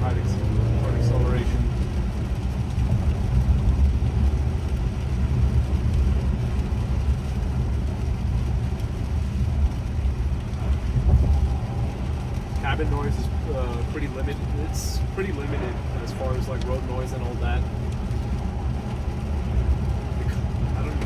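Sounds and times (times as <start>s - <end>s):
low road rumble inside car: 0.0s - 21.0s
rain: 0.0s - 21.0s
wet tyres hissing: 0.0s - 21.0s.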